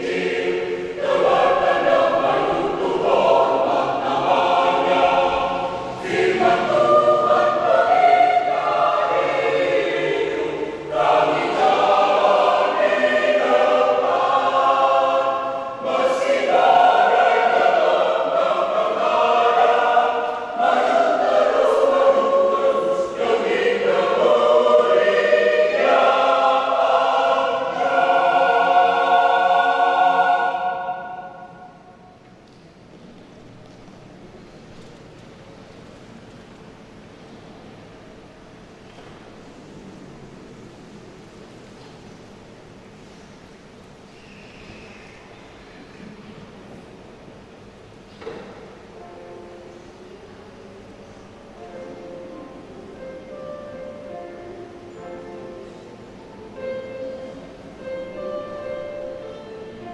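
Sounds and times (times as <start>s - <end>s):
choir singing a hymn: 0.0s - 32.3s, 44.6s - 59.9s.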